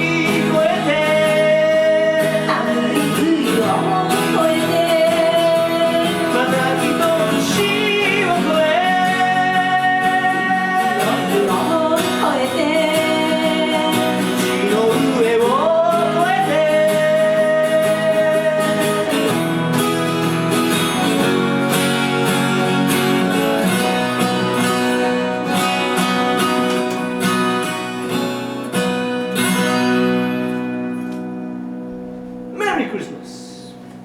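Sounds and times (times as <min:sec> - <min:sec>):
slow ballad on acoustic guitar: 0:00.0 - 0:34.0.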